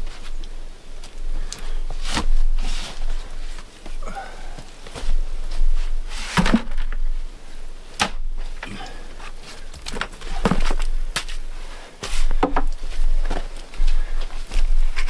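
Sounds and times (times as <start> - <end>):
sharp knocks and thuds: 12.0 - 14.0.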